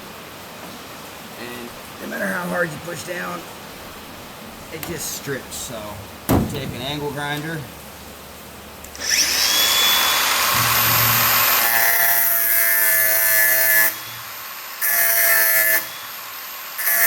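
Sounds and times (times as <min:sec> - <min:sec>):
angle grinder cutting metal: 0:08.9 - 0:17.0.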